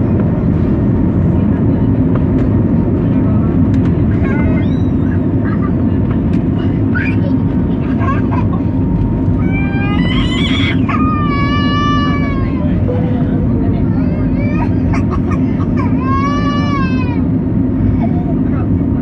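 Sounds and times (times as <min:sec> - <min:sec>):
jet engines rumbling in cabin: 0:00.0 - 0:19.0
voices: 0:00.5 - 0:19.0
child crying: 0:09.4 - 0:12.9, 0:13.8 - 0:17.3.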